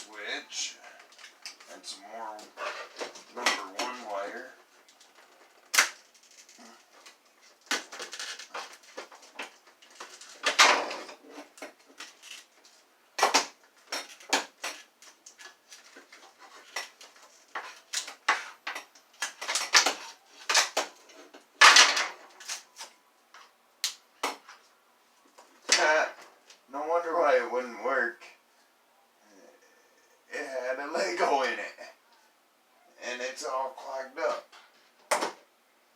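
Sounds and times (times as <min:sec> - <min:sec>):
plastic vacuum parts clicking and rattling: 0:04.8 - 0:22.7.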